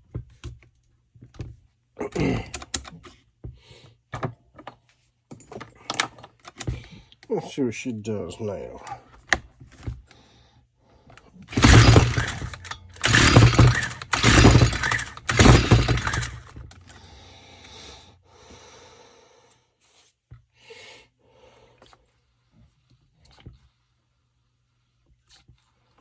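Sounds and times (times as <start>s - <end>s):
rattling and handling noise: 4.2s - 6.9s, 11.5s - 17.2s
engine turning over: 11.5s - 17.3s
recoil starter pulled: 11.5s - 17.8s.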